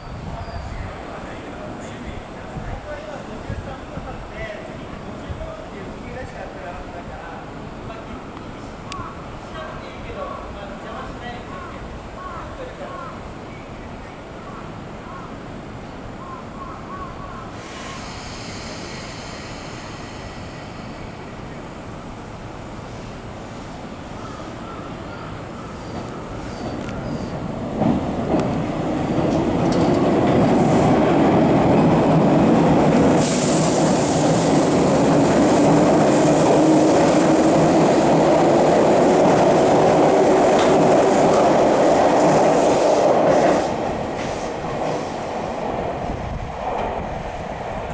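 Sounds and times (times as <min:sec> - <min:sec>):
electric train rumbling: 0:15.6 - 0:47.9
hiss: 0:17.5 - 0:21.5, 0:33.0 - 0:37.5, 0:42.2 - 0:45.5.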